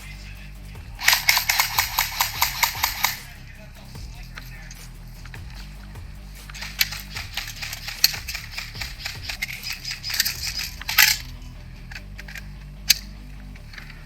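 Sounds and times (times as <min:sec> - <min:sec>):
airsoft fire and bbs striking: 0:00.0 - 0:03.3, 0:04.0 - 0:11.3.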